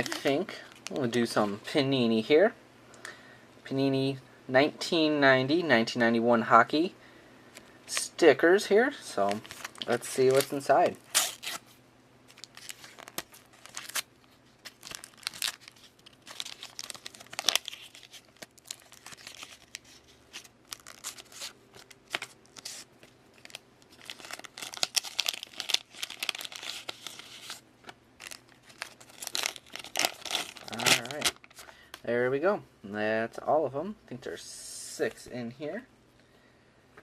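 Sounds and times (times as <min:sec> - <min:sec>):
foil wrapper tearing and crinkling: 0:09.4 - 0:11.6, 0:12.3 - 0:27.6, 0:28.2 - 0:31.7.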